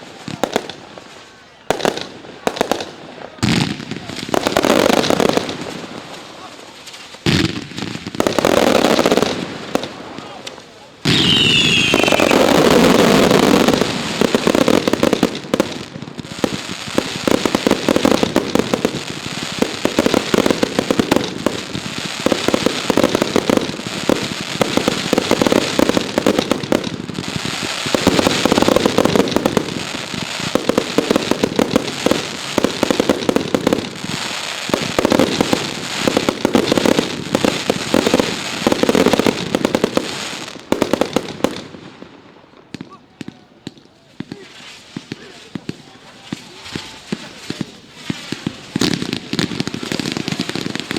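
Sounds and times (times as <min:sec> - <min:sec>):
fireworks bangs and crackling: 0:00.0 - 0:50.9
falling firework whistle: 0:11.0 - 0:13.8.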